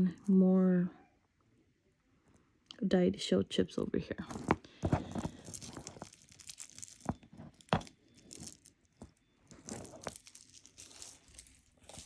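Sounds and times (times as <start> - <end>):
light rustling: 4.3 - 12.0
beads clicking together: 4.8 - 12.0.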